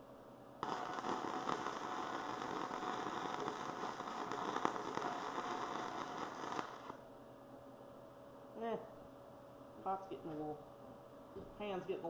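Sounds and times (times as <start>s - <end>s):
welding arc crackling: 0.6s - 7.0s.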